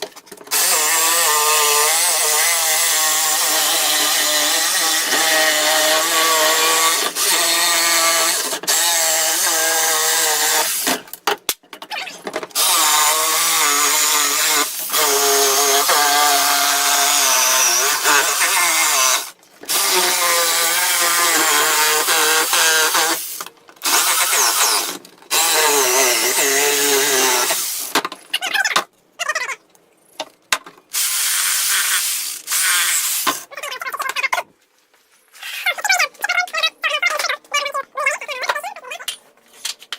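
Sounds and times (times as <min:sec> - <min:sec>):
power tool cutting wood: 0:00.5 - 0:11.0, 0:12.5 - 0:28.0, 0:31.0 - 0:33.5.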